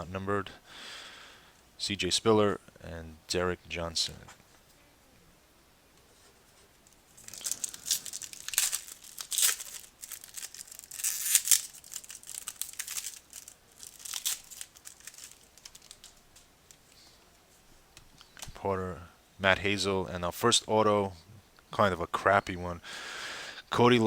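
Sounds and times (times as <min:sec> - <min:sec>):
card pack rustling and crinkling: 0:06.9 - 0:17.0.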